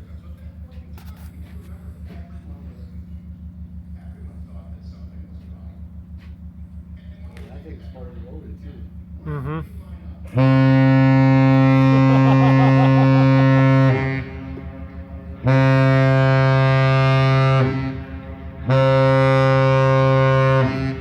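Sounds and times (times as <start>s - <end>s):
ship horn deep blasts: 10.3s - 21.0s.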